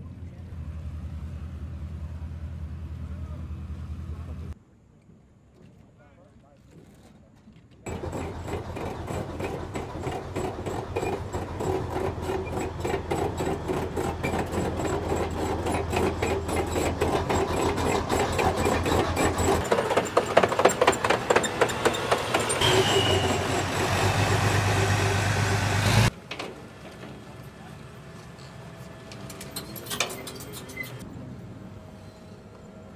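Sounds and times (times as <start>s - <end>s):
steel tracks clattering: 7.9s - 27.8s
tank turbine engine running: 7.9s - 29.7s.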